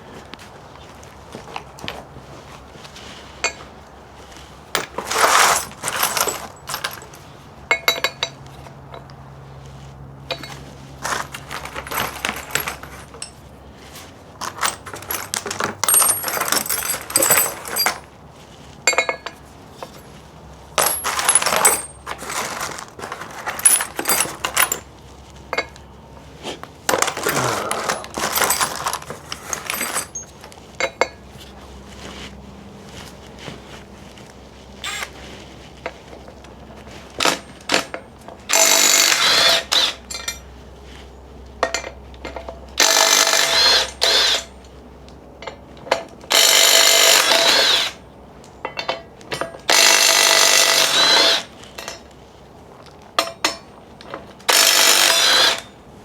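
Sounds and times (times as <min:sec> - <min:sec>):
metal tools clinking and rattling: 0:04.7 - 0:09.1, 0:10.3 - 0:13.5, 0:14.4 - 0:18.1, 0:18.8 - 0:20.2, 0:20.8 - 0:24.9, 0:25.5 - 0:25.8, 0:26.9 - 0:31.2, 0:37.2 - 0:40.5, 0:41.6 - 0:44.7, 0:48.6 - 0:52.1, 0:53.2 - 0:55.8.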